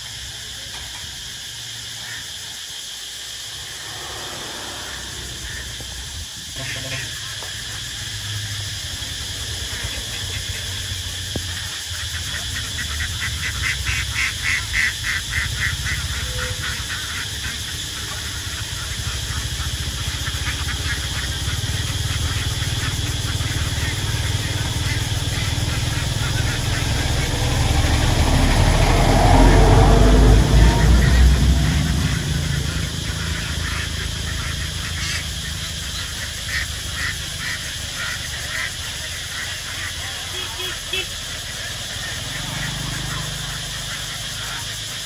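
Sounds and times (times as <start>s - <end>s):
low rumble: 3.4s - 6.6s, 21.3s - 37.7s
ducks quacking: 3.6s - 45.0s.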